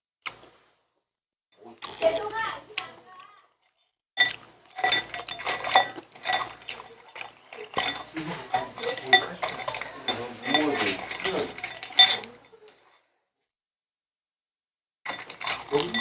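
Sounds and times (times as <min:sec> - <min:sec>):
cutlery clinking against dishes: 0:04.2 - 0:12.7, 0:15.1 - 0:16.0.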